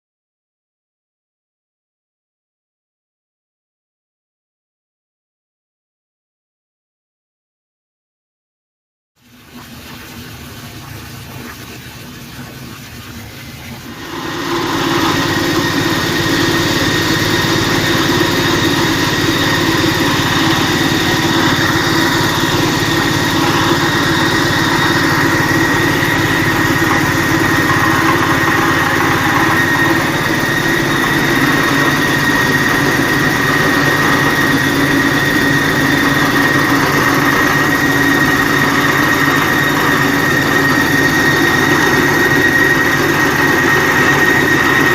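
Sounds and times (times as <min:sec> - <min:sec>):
spice grinder whining: 0:13.9 - 0:44.9.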